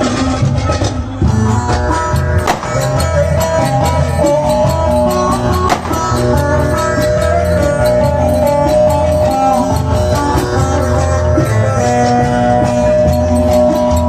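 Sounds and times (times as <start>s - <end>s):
plucked string instrument melody: 1.6s - 14.0s
clicking percussion beat: 2.2s - 9.9s.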